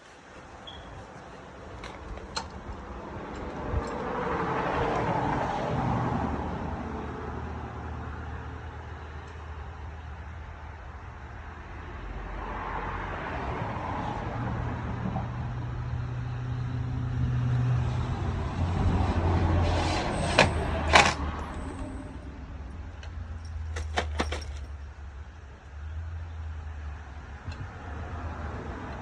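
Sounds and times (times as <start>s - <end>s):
door hardware clicking: 23.0s - 24.7s.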